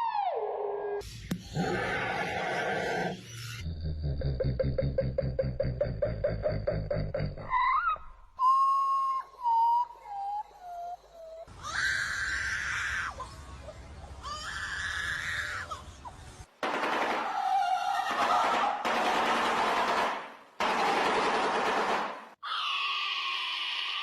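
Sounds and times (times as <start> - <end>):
harsh screeching bird calls: 22.4 - 24.0.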